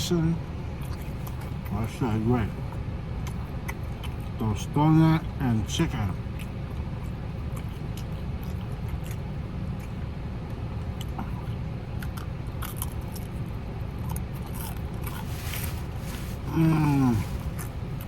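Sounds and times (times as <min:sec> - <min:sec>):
chewing and crunching: 0:00.6 - 0:18.0
low rumble: 0:06.2 - 0:18.0
falling voiced hum: 0:15.2 - 0:18.0.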